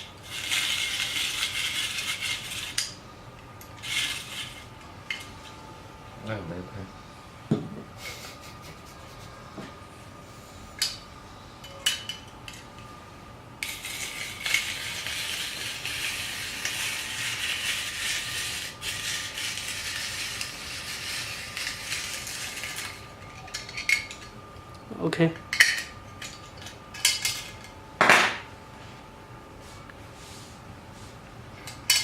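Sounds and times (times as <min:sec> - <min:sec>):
rotary grater scraping food: 0:00.2 - 0:02.9, 0:13.6 - 0:23.0.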